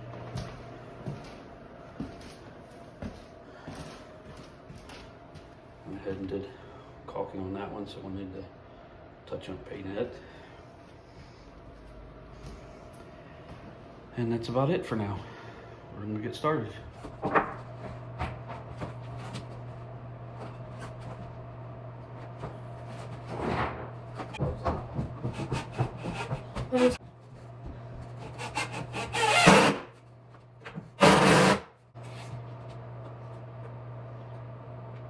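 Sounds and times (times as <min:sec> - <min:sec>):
loud rasping scrapes: 0:25.2 - 0:27.0, 0:28.2 - 0:29.9, 0:31.0 - 0:31.7.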